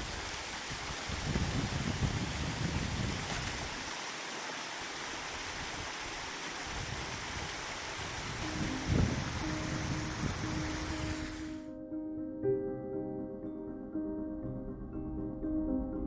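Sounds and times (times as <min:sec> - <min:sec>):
wind rumble on microphone: 0:00.0 - 0:03.8, 0:05.4 - 0:11.6
wind and rain hissing: 0:00.0 - 0:11.7.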